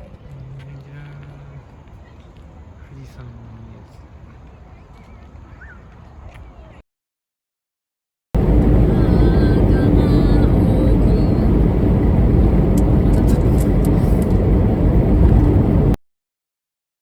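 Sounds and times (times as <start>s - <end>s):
faint constant hum: 8.4s - 15.4s
vehicle road and engine rumble: 8.4s - 16.0s.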